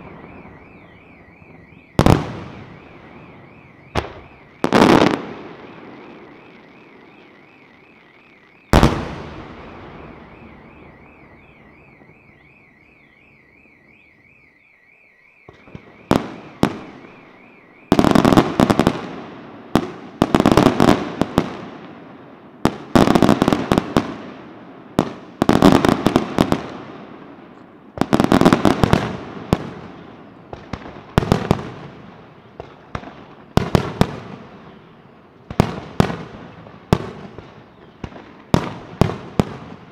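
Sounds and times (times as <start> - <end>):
firework crackling salvos: 0.0 - 13.0.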